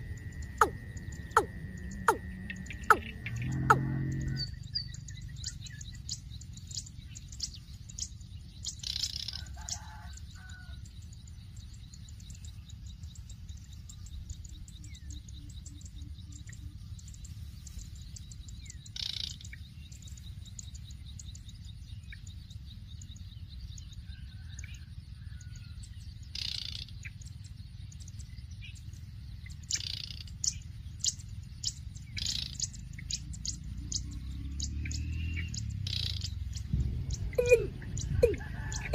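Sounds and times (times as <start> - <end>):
steady low hum: 0.0 - 9.3, 35.4 - 38.9
birds chirping: 0.0 - 38.9.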